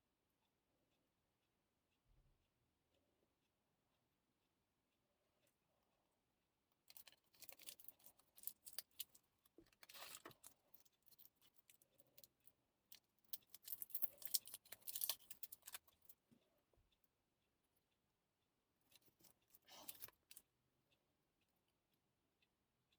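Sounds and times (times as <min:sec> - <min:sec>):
small objects being handled: 0:06.9 - 0:16.1.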